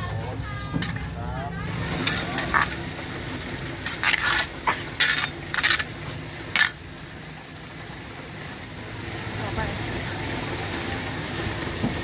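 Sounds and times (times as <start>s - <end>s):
dishes and utensils clinking: 3.8s - 5.9s.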